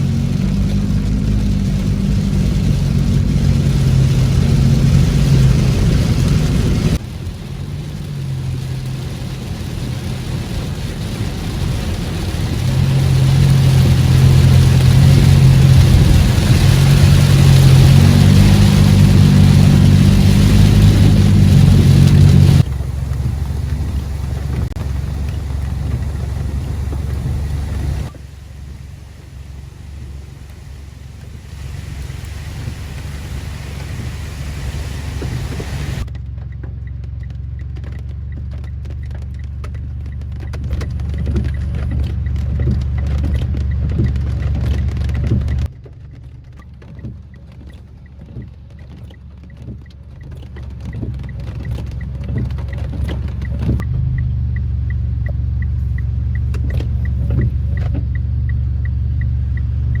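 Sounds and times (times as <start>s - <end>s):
wind buffeting microphone: 10.2s - 28.1s
faint regular ticking: 46.4s - 60.0s.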